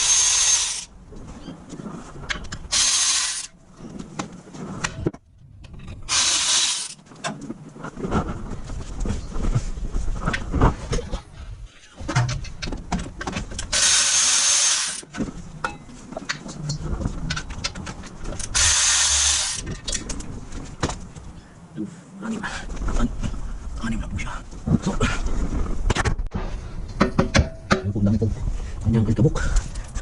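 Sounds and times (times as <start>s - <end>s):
impact wrench spinning: 0.0s - 0.9s, 2.7s - 3.6s, 6.1s - 7.0s, 13.7s - 15.1s, 18.5s - 19.7s.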